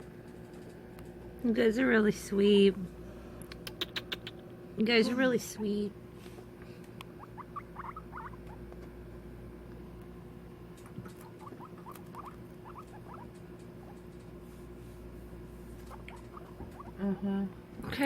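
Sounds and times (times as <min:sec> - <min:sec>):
steady low hum: 0:00.0 - 0:18.0
guinea pigs squeaking: 0:07.2 - 0:08.7, 0:10.8 - 0:14.3, 0:15.7 - 0:17.3.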